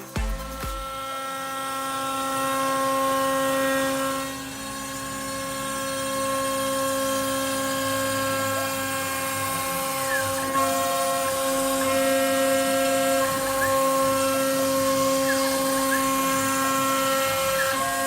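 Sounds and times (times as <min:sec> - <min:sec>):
cnc router motors whining: 0:00.0 - 0:18.0.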